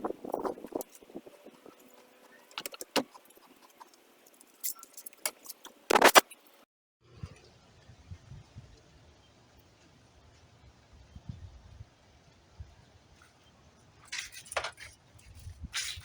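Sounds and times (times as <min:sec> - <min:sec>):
small hard parts clicking: 0:00.1 - 0:06.6.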